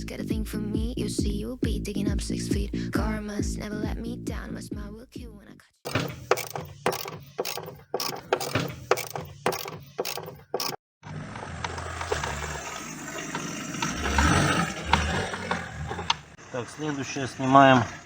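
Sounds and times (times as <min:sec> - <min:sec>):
ratchet wrench clicking: 0:05.9 - 0:10.8
steady mechanical noise: 0:05.9 - 0:18.0.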